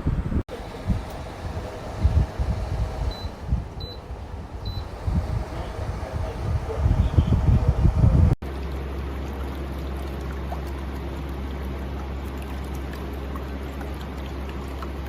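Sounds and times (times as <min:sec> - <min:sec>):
loud rumble: 0:00.0 - 0:08.4
constant low hum: 0:00.0 - 0:15.0
water running in air cooler: 0:00.4 - 0:15.0.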